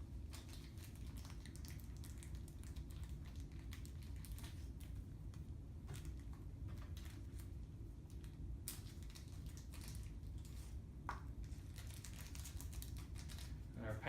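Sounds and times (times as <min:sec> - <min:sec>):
packaging rustling: 0:11.4 - 0:13.6.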